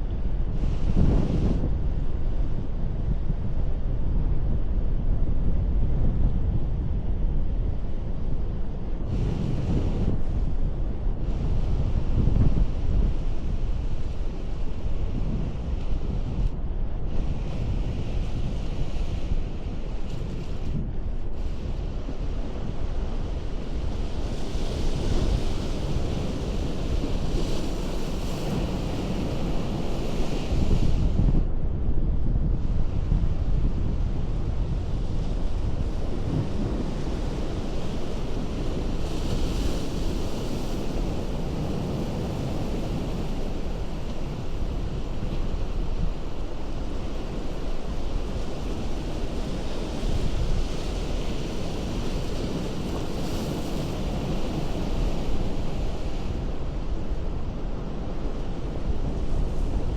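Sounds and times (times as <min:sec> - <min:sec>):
wind buffeting microphone: 0:00.0 - 0:59.9
surf rumbling on rocky shore: 0:00.1 - 0:31.4, 0:32.1 - 0:59.9
wave washing in: 0:32.6 - 0:59.9.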